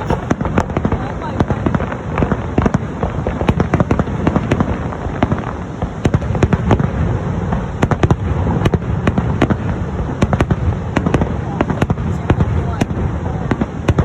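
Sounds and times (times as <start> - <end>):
continuous low rumble: 0.0 - 14.0
fireworks bangs and cracks: 0.0 - 14.0.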